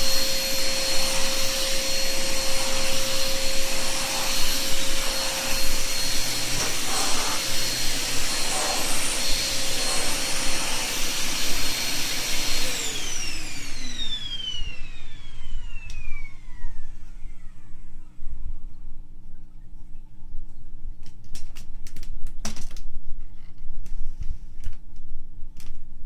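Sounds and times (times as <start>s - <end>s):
vacuum cleaner whine: 0.0s - 19.1s.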